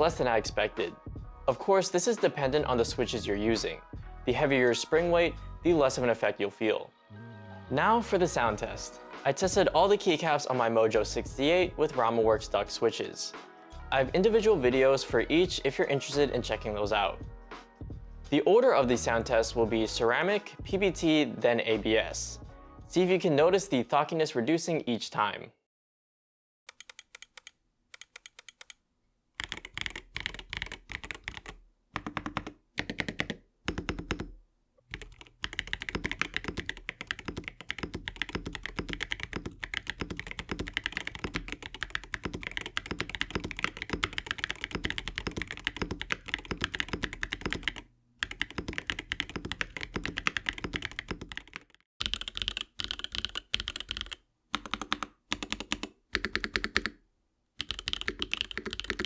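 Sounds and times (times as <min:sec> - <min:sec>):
mechanical keyboard typing: 0:26.7 - 0:28.8, 0:29.4 - 0:57.0, 0:57.6 - 0:59.0.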